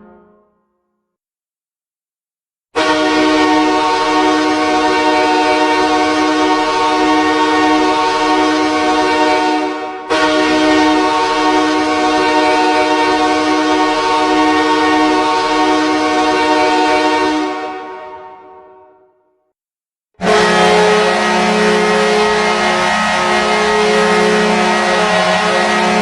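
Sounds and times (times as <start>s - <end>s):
goal horn blast: 2.8s - 8.1s, 20.2s - 26.0s.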